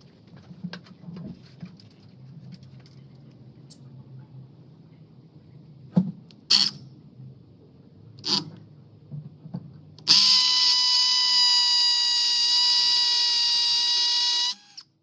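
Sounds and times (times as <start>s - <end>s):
power drill motor running: 10.1s - 14.9s.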